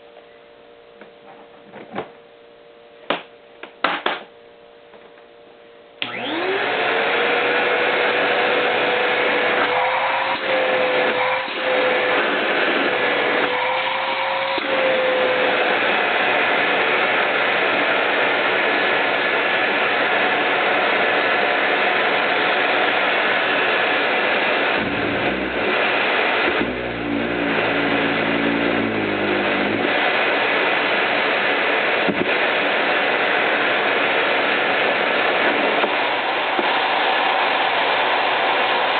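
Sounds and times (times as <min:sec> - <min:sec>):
vacuum cleaner running: 0:06.0 - 0:38.9
low rumble and shifting hum: 0:24.7 - 0:29.9.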